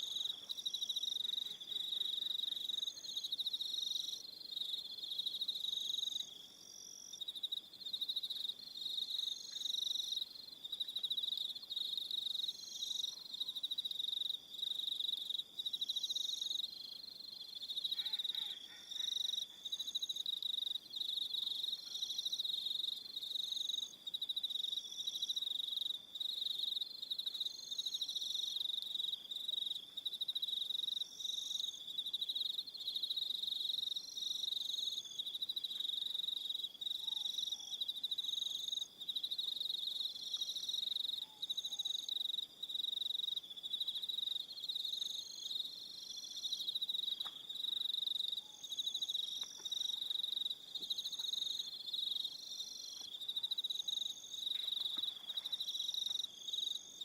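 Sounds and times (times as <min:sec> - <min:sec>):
crickets trilling: 0:30.9 - 0:57.0.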